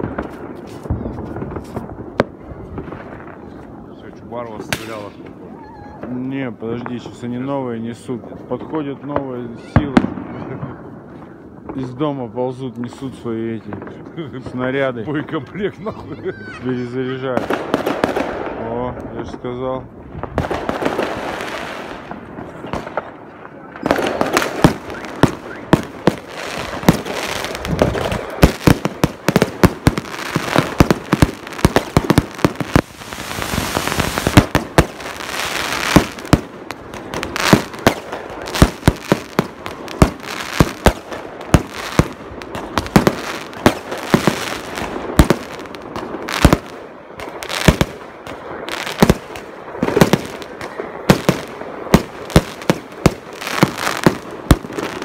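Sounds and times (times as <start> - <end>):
fireworks bangs and cracks: 0.0 - 55.0
fireworks hissing: 24.1 - 46.7.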